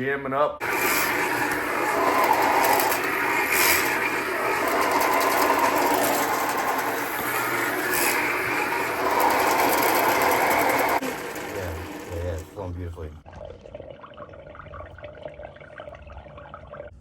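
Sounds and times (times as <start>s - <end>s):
drain-cleaning machine running: 0.6s - 12.7s.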